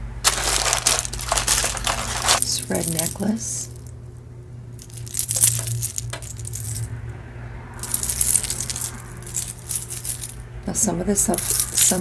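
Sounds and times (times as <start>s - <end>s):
metal chain and beads clinking: 0.3s - 3.9s, 4.7s - 7.0s, 7.8s - 10.4s, 11.2s - 12.0s.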